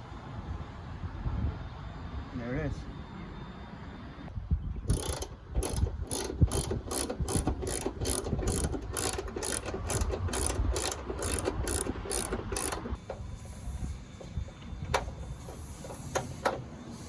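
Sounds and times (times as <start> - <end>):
socket ratchet clicking: 4.9 - 13.0.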